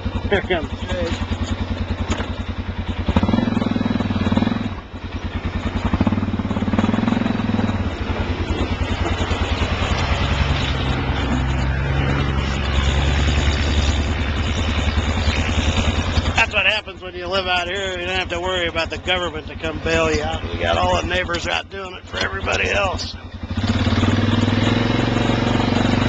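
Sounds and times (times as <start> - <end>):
atv engine running: 0.0 - 26.0.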